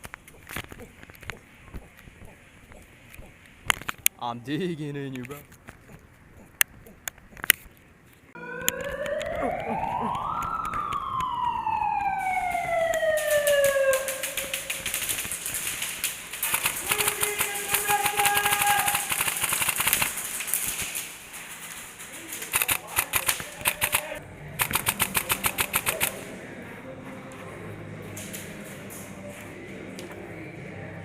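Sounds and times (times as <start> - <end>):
siren wail: 8.4 - 15.4
rapid airsoft gunfire: 13.2 - 21.2, 22.4 - 26.2.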